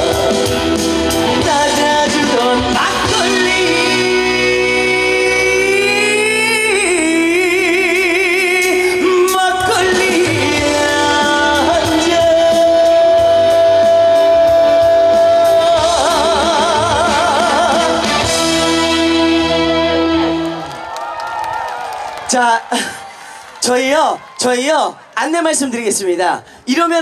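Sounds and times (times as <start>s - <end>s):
singer with wide vibrato: 0.0s - 20.4s
amplified band backing: 0.0s - 23.5s.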